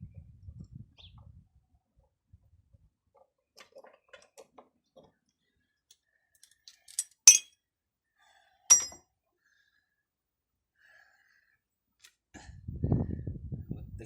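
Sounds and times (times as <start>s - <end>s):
sharp metallic clinks: 6.9s - 7.4s, 8.7s - 9.0s.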